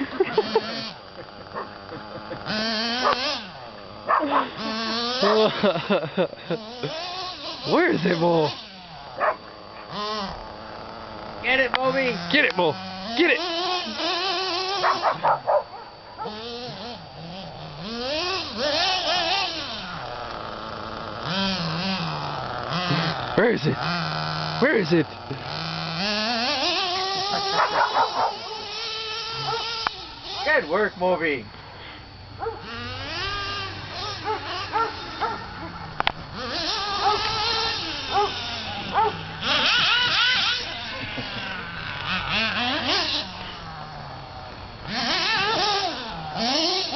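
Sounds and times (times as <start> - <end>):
dog barking: 3.0 - 3.2, 4.1 - 4.5, 14.8 - 16.3, 27.5 - 28.5, 29.4 - 29.6, 32.4 - 32.6, 34.2 - 35.7, 37.0 - 37.3, 38.1 - 39.1.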